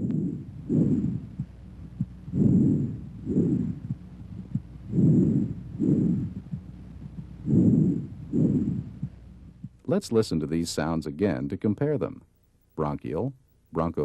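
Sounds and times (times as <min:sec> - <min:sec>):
breathing through a stethoscope: 0:02.3 - 0:03.9.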